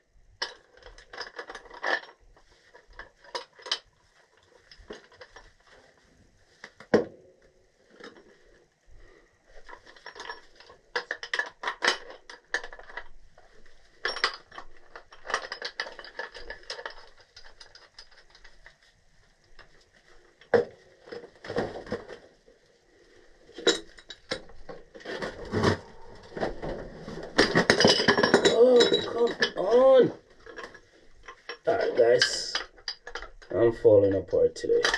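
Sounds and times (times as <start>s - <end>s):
metal tools clinking and scraping: 9.6s - 18.5s, 23.5s - 33.5s.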